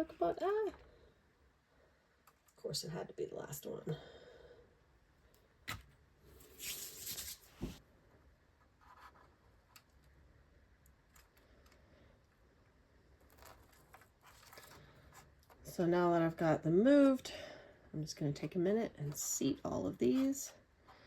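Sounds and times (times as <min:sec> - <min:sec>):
rustling scrape of potting soil: 0:06.3 - 0:07.8.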